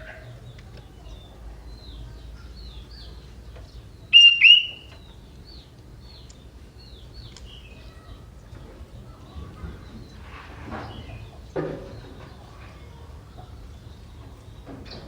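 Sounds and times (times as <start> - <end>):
bird chirping: 0.4 - 8.2
loud whistled bird notes: 4.1 - 5.0.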